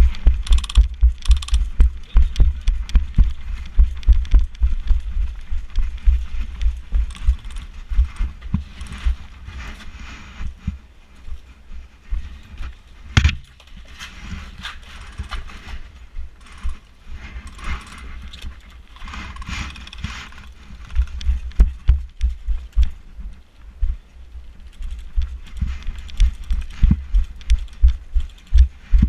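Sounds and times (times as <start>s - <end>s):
camera knocking and rattling: 0.0s - 9.3s, 13.1s - 13.7s, 17.4s - 23.0s, 24.7s - 29.0s.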